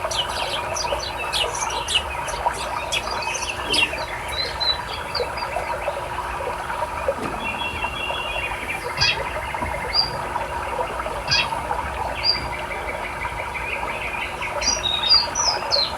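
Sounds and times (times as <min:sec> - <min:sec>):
bird trill: 0:00.0 - 0:05.7
songbirds chirping: 0:00.0 - 0:15.9.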